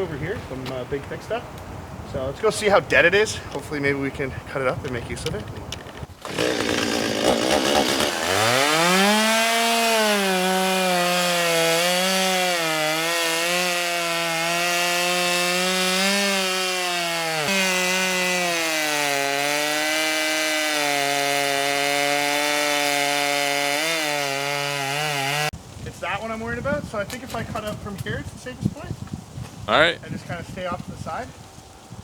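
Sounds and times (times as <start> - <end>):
chainsaw cutting wood: 6.0 - 25.5.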